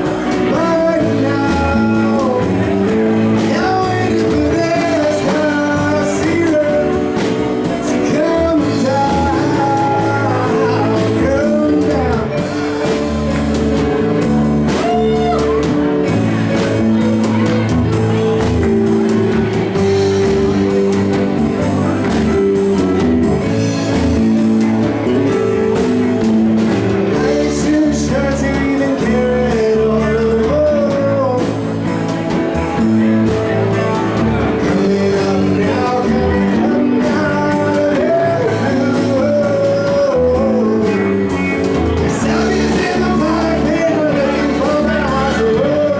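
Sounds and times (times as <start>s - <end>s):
man singing lead vocal: 0.0s - 13.9s, 23.2s - 45.9s
bass guitar: 0.0s - 45.9s
drums: 0.0s - 45.9s
electric guitar: 0.0s - 45.9s
keyboards: 0.0s - 45.9s.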